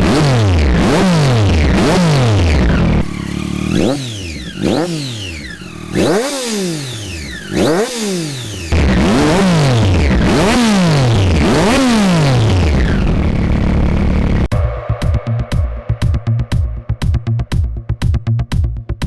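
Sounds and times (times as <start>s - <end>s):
motorcycle engine revving: 0.0s - 14.7s.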